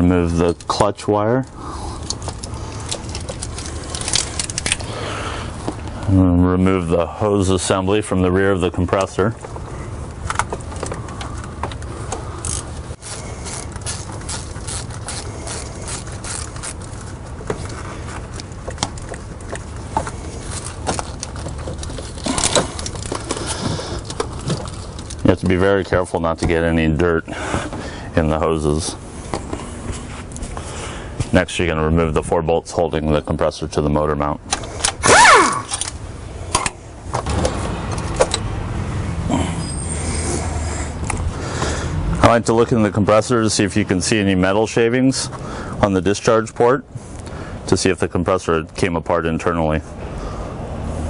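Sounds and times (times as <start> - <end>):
steady low hum: 0.0 - 43.1
hand tools clicking and clanking: 2.0 - 5.0, 10.2 - 25.3, 34.5 - 38.4
hand tools clicking on metal fittings: 12.4 - 16.9.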